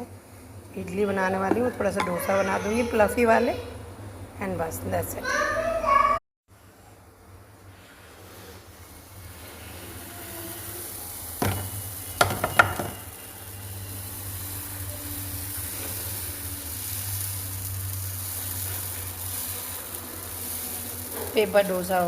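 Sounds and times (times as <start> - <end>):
batter sizzling on a griddle: 7.6 - 22.0.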